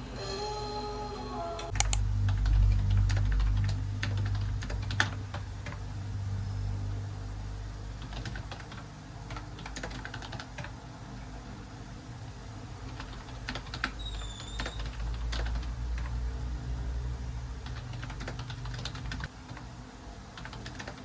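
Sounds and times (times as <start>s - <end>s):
keyboard key clicks: 1.7s - 2.0s
low rumble: 1.8s - 8.0s.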